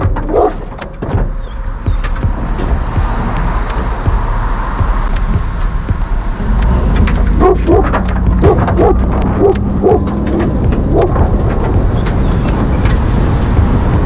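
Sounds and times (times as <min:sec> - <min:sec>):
vehicle engine and road noise: 0:00.0 - 0:14.0
dog barking: 0:00.3 - 0:00.6, 0:07.4 - 0:10.1, 0:10.9 - 0:11.2.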